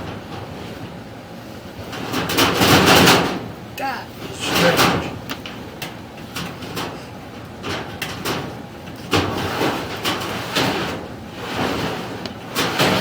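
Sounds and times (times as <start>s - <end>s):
scraping in metal ductwork: 9.2s - 13.0s.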